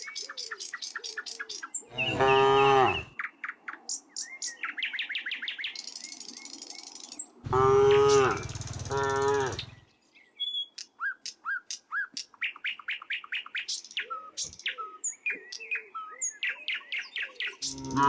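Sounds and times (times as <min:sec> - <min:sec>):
small birds chirping: 0:00.0 - 0:18.0
cow mooing: 0:01.9 - 0:03.1, 0:07.5 - 0:09.7, 0:17.7 - 0:18.0.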